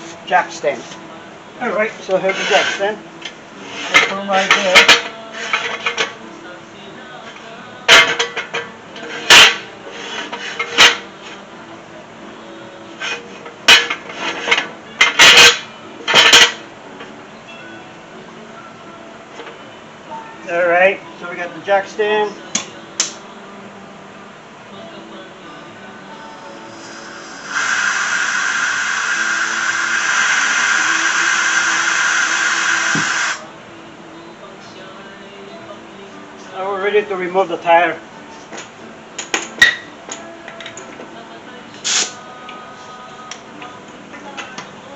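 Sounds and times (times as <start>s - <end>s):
metal jack stand clanking: 13.7s - 16.6s
compressed air hissing: 26.6s - 33.4s, 41.8s - 42.2s.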